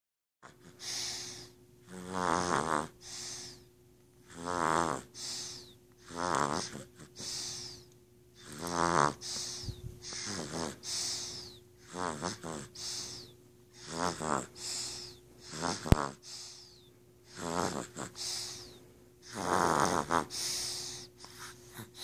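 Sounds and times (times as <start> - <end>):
person snoring: 0.4 - 7.8, 8.4 - 22.0
hissing breath with whistle: 9.2 - 11.6.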